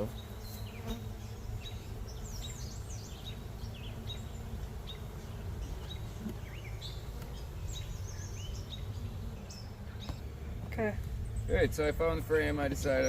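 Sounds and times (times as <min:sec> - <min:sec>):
birds chirping: 0:00.0 - 0:13.0
honey bees humming: 0:00.0 - 0:13.0
steady low rumble: 0:10.1 - 0:13.0.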